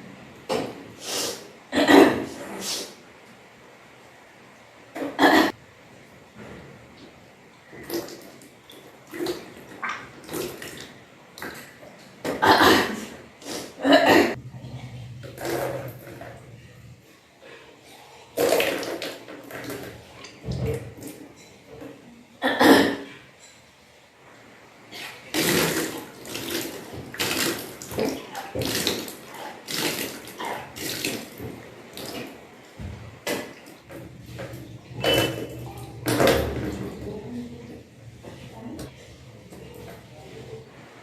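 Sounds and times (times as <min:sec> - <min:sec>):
gushes of water: 0:07.7 - 0:13.0, 0:18.3 - 0:21.2, 0:24.9 - 0:37.7
water splashing down in gushes: 0:25.2 - 0:32.6.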